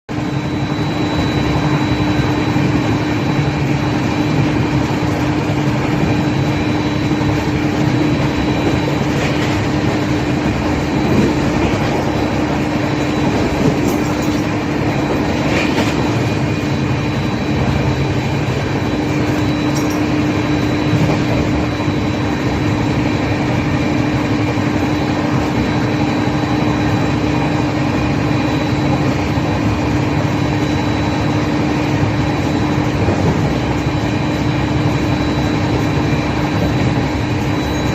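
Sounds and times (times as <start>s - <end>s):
constant hum: 0.1s - 37.9s
train wheels rumbling on rails: 0.1s - 37.9s.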